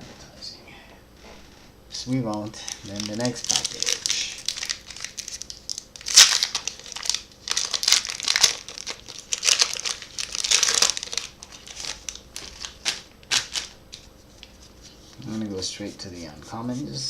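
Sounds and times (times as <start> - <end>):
foil wrapper crinkling: 2.2 - 14.6.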